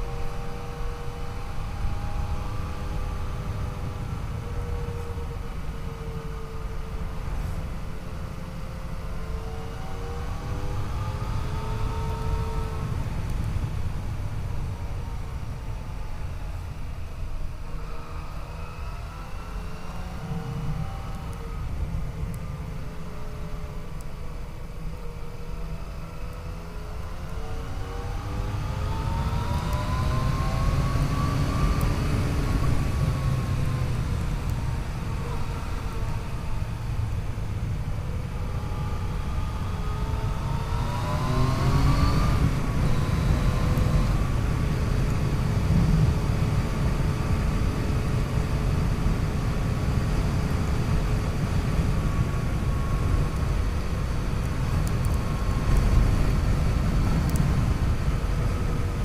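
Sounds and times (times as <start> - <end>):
wind and road noise rumble: 0.0 - 59.0
motorcycle engine accelerating: 26.0 - 59.0.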